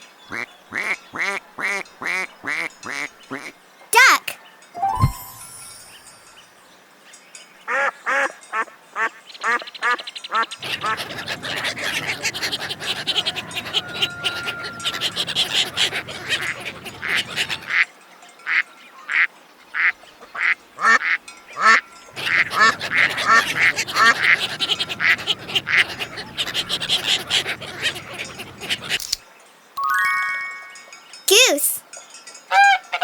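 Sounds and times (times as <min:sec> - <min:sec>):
ducks quacking: 0:10.6 - 0:17.8, 0:21.6 - 0:29.2.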